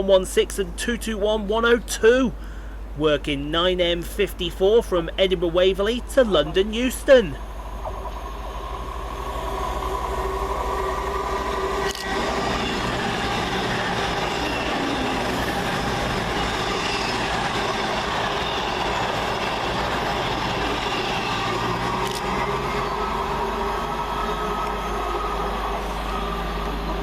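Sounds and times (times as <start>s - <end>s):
diesel train running: 0.0s - 27.0s.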